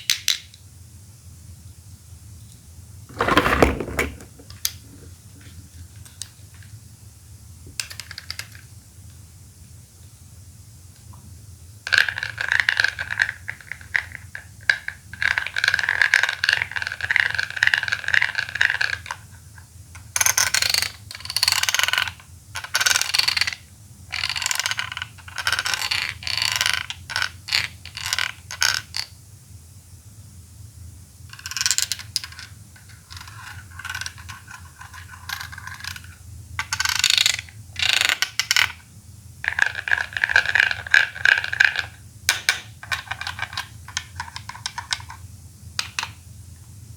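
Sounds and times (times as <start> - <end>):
plastic scraping: 3.1 - 5.1
plastic toy clicking and ratcheting: 24.2 - 29.1, 31.4 - 38.8.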